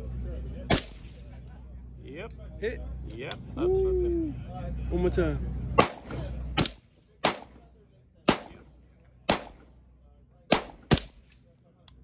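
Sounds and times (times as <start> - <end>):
rifle shots: 0.7 - 1.2, 5.8 - 7.7, 8.3 - 8.7, 9.3 - 9.7, 10.5 - 11.3.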